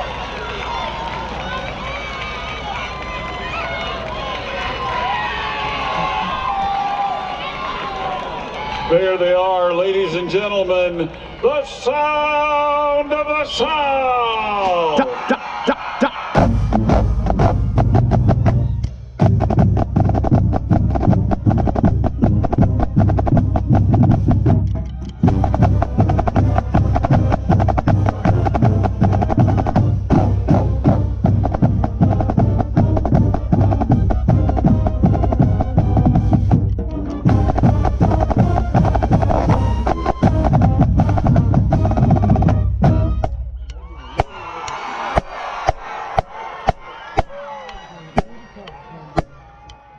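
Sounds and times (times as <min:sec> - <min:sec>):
marching band playing: 0:15.2 - 0:47.4
snare drum rolls: 0:16.3 - 0:47.4.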